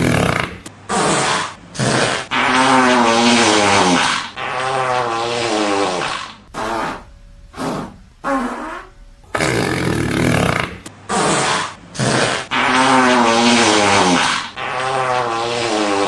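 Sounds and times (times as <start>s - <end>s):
fart sounds: 0.0s - 16.0s.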